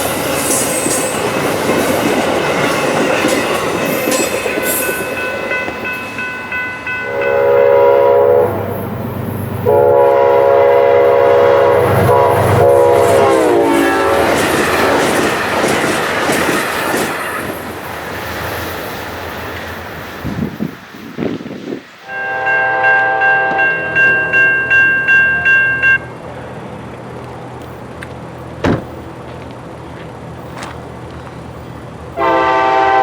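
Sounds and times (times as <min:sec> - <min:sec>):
train rumble and wheel clatter: 0:00.0 - 0:33.0
locomotive air horn: 0:07.0 - 0:08.8, 0:09.6 - 0:15.0, 0:22.0 - 0:24.3, 0:32.2 - 0:33.0.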